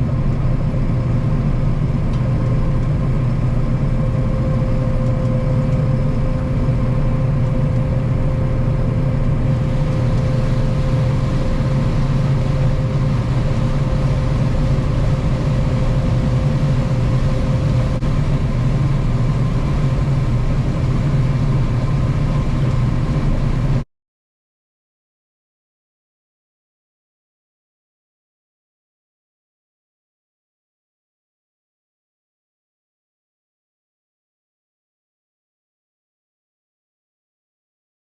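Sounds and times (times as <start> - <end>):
combine harvester engine drone: 0.0 - 23.8
steady machine whine: 0.0 - 23.8.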